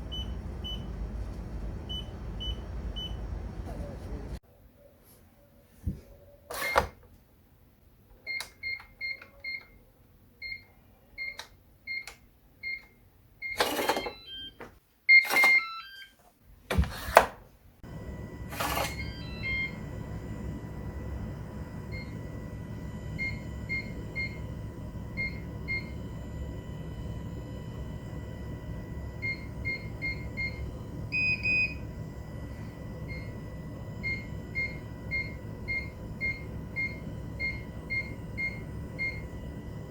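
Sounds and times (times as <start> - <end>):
steady electronic hum: 0.0 - 4.4, 17.8 - 39.9
electronic keypad beeps: 18.8 - 19.8.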